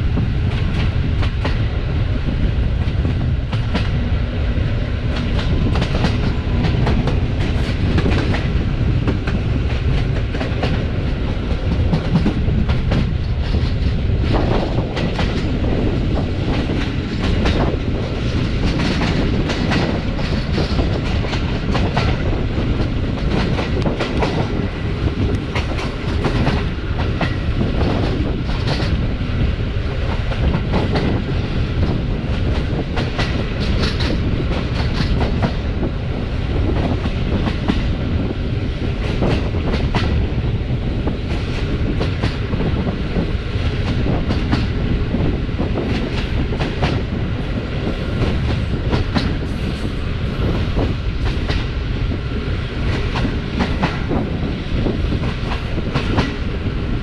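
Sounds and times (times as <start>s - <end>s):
train running gear rumble: 0.0s - 57.0s
train wheels clacking over rail joints: 5.1s - 29.0s, 29.9s - 36.0s, 38.9s - 40.2s, 41.1s - 47.2s, 47.9s - 51.8s, 52.8s - 56.4s.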